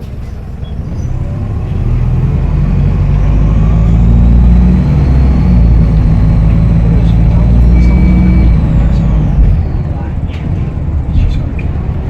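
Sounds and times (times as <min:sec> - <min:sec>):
bus engine running: 0:00.0 - 0:12.0
high turbo whistle: 0:03.0 - 0:09.5.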